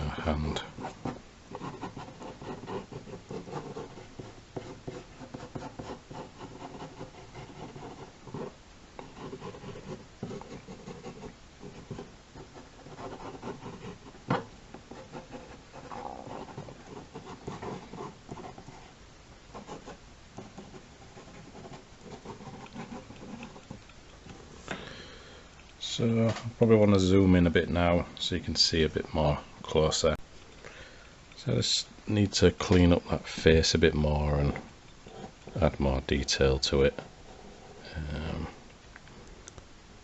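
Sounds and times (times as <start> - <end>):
pencil scratching on paper: 0.6 - 24.4, 35.0 - 35.7.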